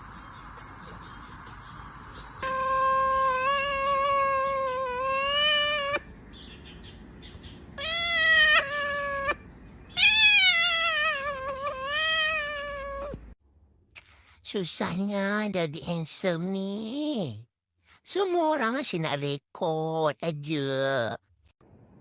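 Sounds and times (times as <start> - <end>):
cat meowing: 2.4 - 6.1, 7.8 - 13.4.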